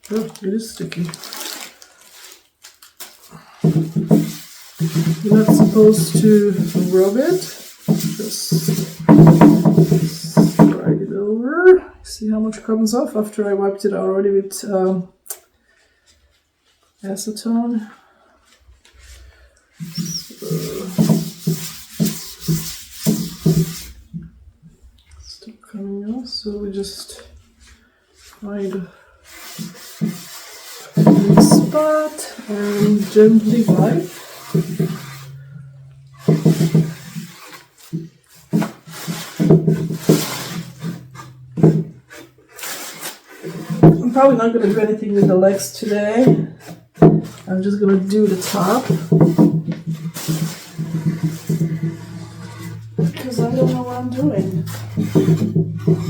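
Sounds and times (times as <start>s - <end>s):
cloth rubbing on wood: 3.0s - 10.8s, 18.4s - 24.5s, 27.5s - 56.0s.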